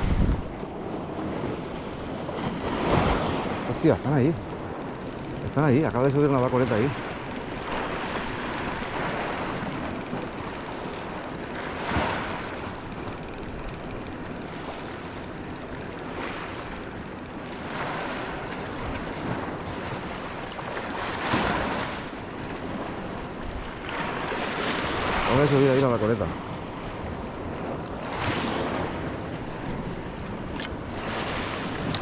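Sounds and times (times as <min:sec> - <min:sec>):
wind rushing over microphone: 0:00.0 - 0:14.9, 0:18.0 - 0:32.0
sea water washing: 0:00.0 - 0:32.0.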